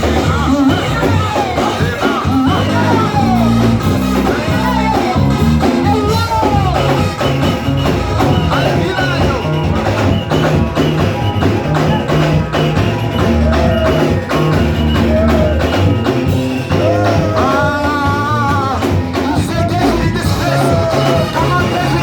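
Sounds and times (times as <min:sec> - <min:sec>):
person singing: 0:00.0 - 0:06.9, 0:16.7 - 0:22.0
bass line: 0:00.0 - 0:22.0
percussion beat: 0:00.0 - 0:22.0
worship band music: 0:00.0 - 0:22.0.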